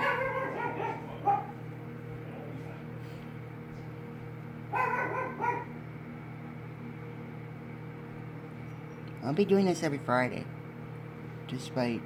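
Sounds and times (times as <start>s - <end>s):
microwave oven humming: 0.0s - 12.0s.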